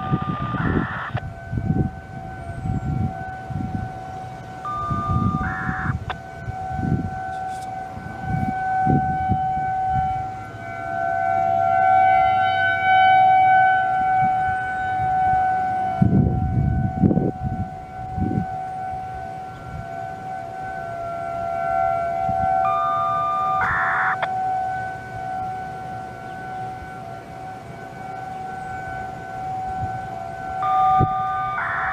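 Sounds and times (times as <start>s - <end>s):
warning sirens steady tone: 0.0s - 31.9s
low rumbles: 4.6s - 7.3s.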